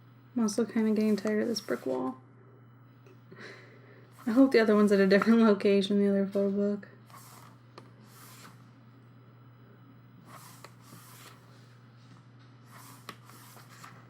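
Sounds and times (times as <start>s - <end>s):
faint steady hum: 0.0s - 14.0s
book pages turning: 7.1s - 8.6s, 10.3s - 11.6s, 12.7s - 14.0s.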